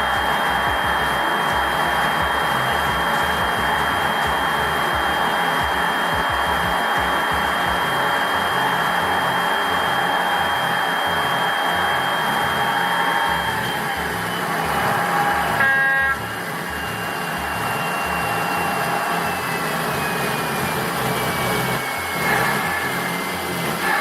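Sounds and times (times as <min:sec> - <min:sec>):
diesel engine noise with whine: 0:00.0 - 0:24.0
train horn blast: 0:14.9 - 0:16.3.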